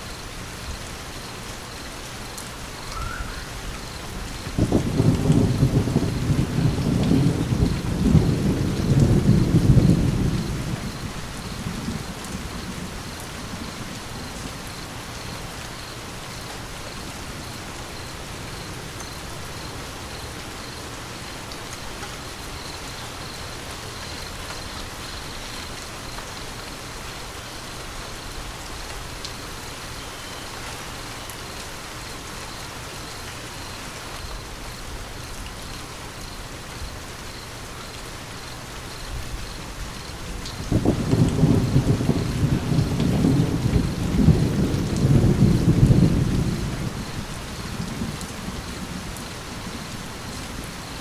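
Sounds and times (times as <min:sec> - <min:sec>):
steady rain: 0:00.0 - 0:51.0
thunder rumbling: 0:02.9 - 0:15.0, 0:39.1 - 0:51.0.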